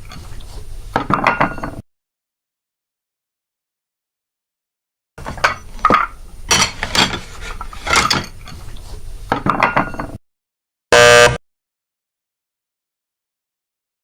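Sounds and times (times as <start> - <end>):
dishes clattering: 1.0 - 1.8, 5.2 - 8.7, 9.3 - 10.2.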